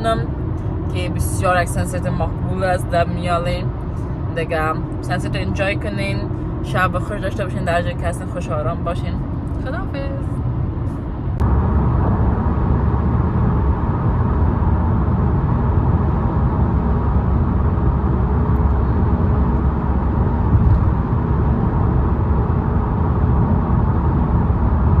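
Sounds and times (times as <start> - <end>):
car interior road rumble: 0.0 - 25.0
wind noise: 8.0 - 25.0.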